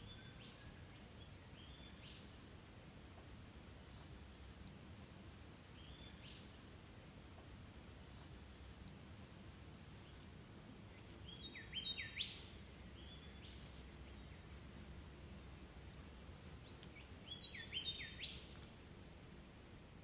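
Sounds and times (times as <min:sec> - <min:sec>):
faint low rumble: 0:00.0 - 0:20.0.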